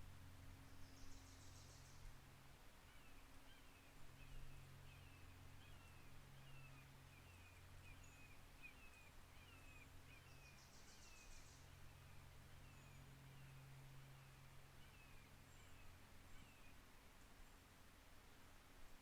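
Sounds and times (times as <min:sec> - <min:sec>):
steady low hum: 0:00.0 - 0:19.0
bird chirping: 0:00.6 - 0:02.1, 0:02.9 - 0:17.6.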